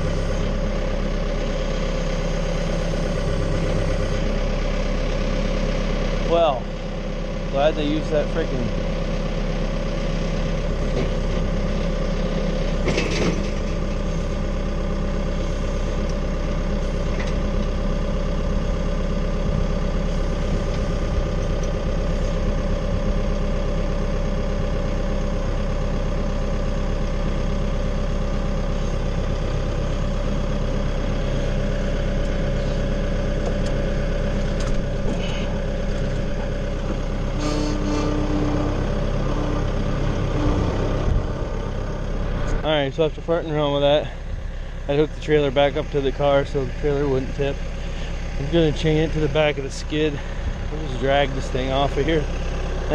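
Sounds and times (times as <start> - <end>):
engine idling: 0.0 - 52.9.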